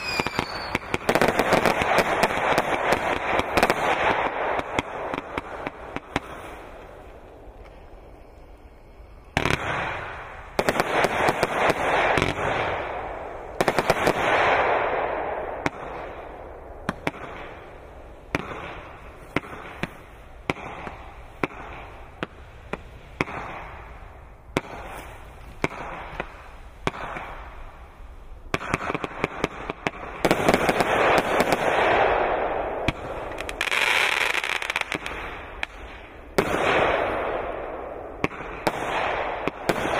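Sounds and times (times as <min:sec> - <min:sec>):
crackling firework shower: 0:00.0 - 0:39.9
firework shots: 0:00.0 - 0:39.9.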